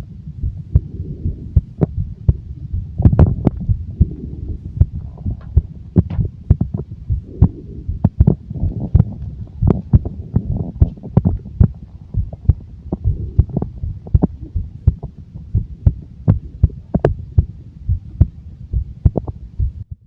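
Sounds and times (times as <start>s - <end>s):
stomach growling: 0.7s - 15.2s.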